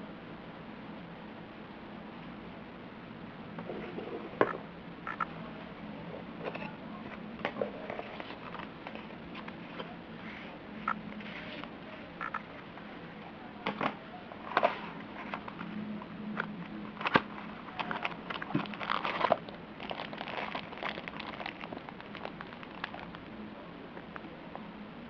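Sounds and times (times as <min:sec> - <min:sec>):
steady low hum: 0:00.0 - 0:25.0
handling clicks taps and crinkles: 0:16.3 - 0:23.3.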